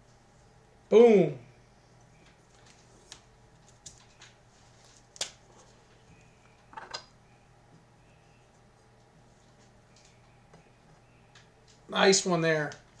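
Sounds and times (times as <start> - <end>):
cards and plastic rustling: 2.3 - 6.1.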